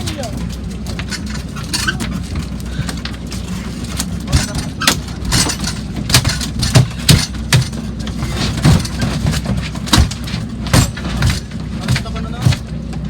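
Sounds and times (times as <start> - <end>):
boat engine running at low revs: 0.0 - 13.0
knocks and thumps: 3.8 - 13.0.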